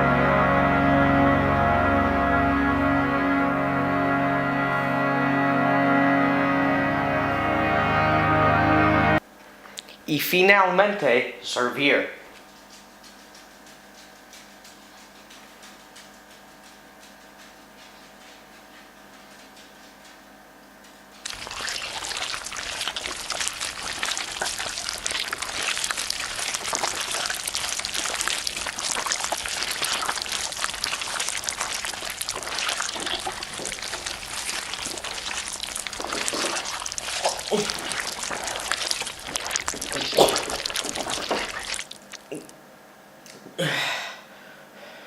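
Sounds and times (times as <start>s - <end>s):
crackling sizzle: 21.2s - 42.5s.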